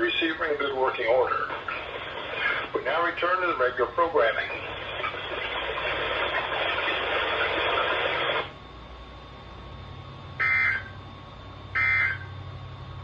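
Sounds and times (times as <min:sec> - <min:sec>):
radio receiver hiss: 0:00.0 - 0:08.6.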